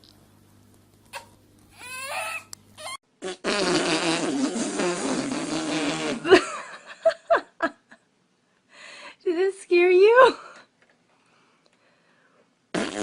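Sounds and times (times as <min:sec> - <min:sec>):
baby whimpering: 0:01.1 - 0:03.0
baby crying: 0:01.2 - 0:03.0
long wavering fart: 0:02.8 - 0:06.4, 0:12.7 - 0:13.0.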